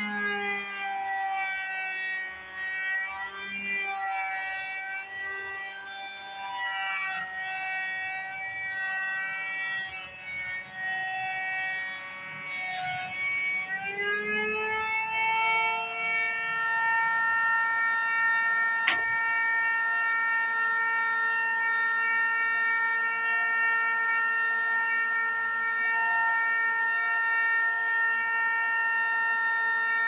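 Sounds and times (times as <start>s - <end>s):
jointer cutterhead whine: 0.0s - 30.0s.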